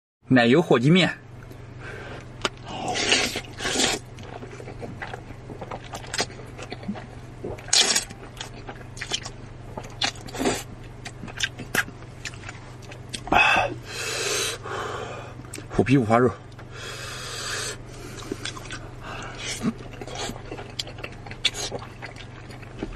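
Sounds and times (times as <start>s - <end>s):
steady low hum: 0.2s - 22.9s
chewing and mouth noises: 2.2s - 13.4s, 17.9s - 22.9s.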